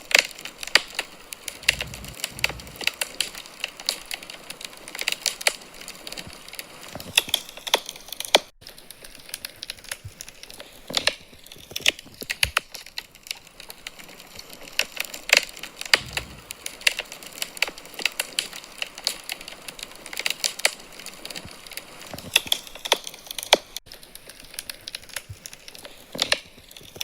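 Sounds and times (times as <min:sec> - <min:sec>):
wood fire crackling: 0:00.0 - 0:27.0
soft fire hiss: 0:00.6 - 0:08.1.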